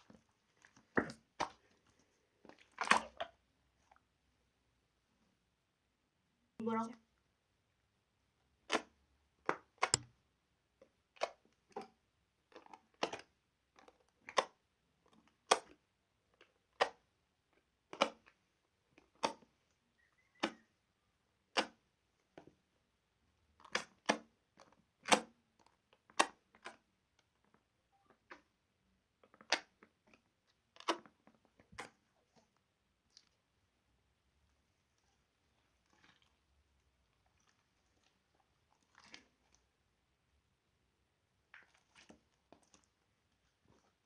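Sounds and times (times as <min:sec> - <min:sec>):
slime popping and clicking: 0:09.5 - 0:10.1.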